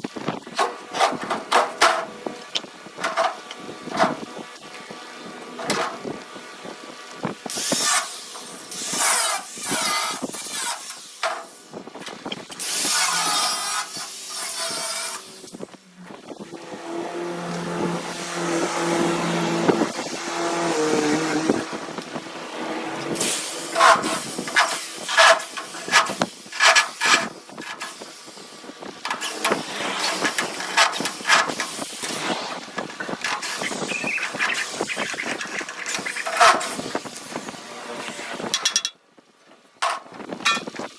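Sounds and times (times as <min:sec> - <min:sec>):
welding arc crackling hiss: 0:07.5 - 0:11.8, 0:12.4 - 0:15.8, 0:23.0 - 0:37.6.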